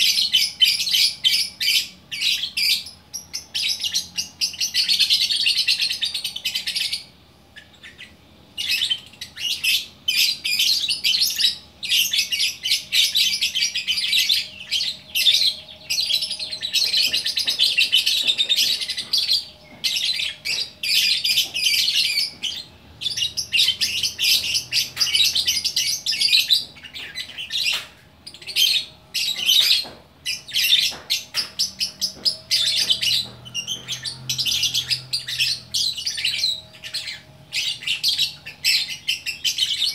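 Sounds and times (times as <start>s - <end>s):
bird singing high chirps: 0.0s - 39.9s.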